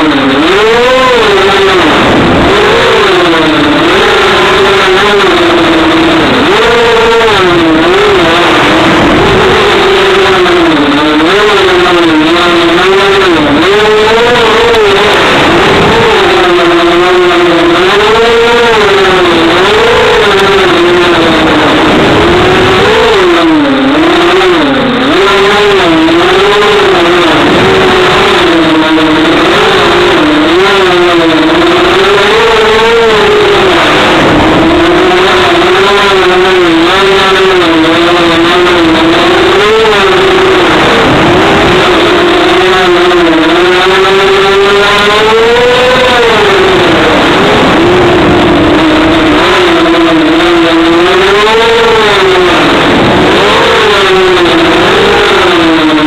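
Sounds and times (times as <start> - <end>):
quadcopter motors whining: 0.0 - 56.0.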